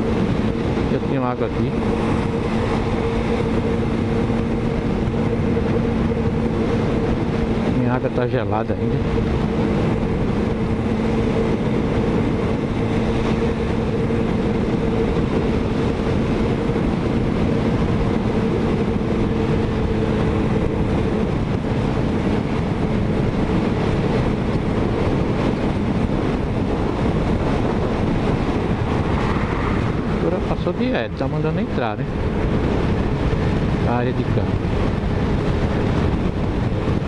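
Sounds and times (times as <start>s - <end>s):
wind and road noise: 0.0s - 37.0s.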